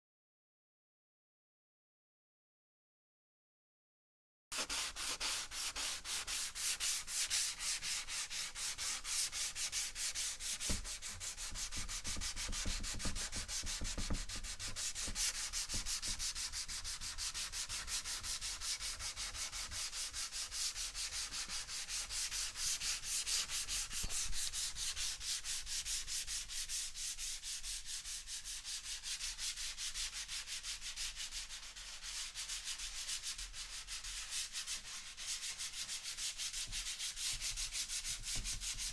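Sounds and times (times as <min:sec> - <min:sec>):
sandpaper rubbing on wood: 0:04.6 - 0:38.9.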